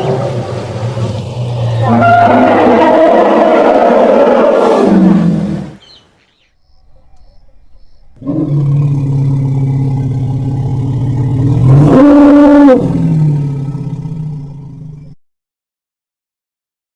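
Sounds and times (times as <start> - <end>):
elephant calling: 0.0 - 6.2.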